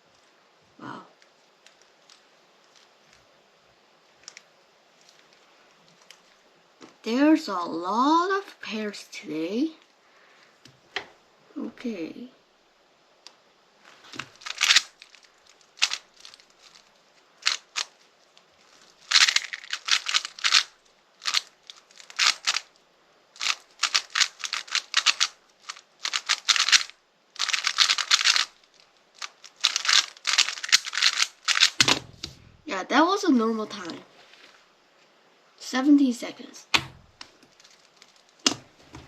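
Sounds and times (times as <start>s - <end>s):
puzzle cube plastic clicking: 14.1s - 18.0s, 18.7s - 22.7s, 23.4s - 28.6s, 29.2s - 32.5s.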